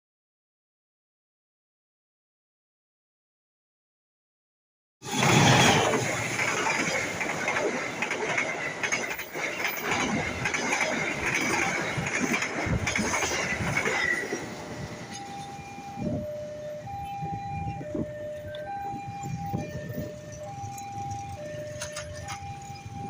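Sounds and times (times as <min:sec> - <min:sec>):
train rumble and wheel clatter: 0:05.0 - 0:23.0
level-crossing two-tone alarm: 0:05.2 - 0:23.0.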